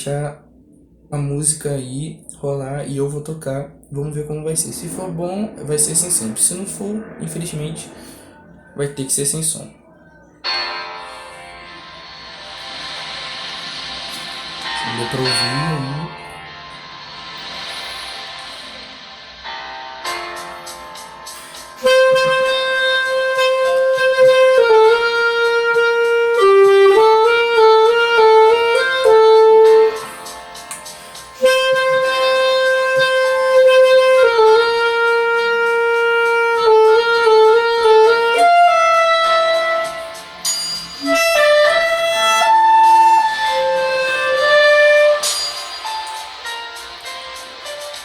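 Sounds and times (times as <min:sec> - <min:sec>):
faint backing track from phone speaker: 0:00.0 - 0:24.2
clarinet playing slow melody: 0:21.8 - 0:45.5.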